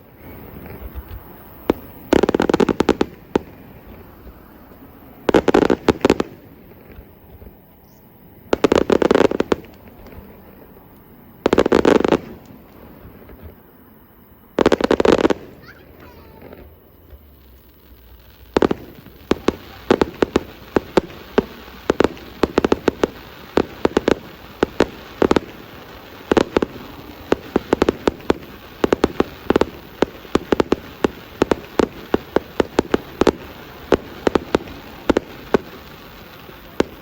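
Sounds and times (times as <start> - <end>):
fireworks bursting: 0.0 - 37.0.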